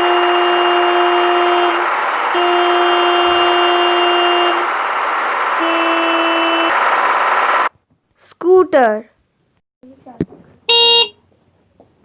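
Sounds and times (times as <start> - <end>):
tractor horn blasts: 0.0 - 4.7, 5.6 - 6.7, 10.7 - 11.2
tractor engine running: 0.0 - 7.7.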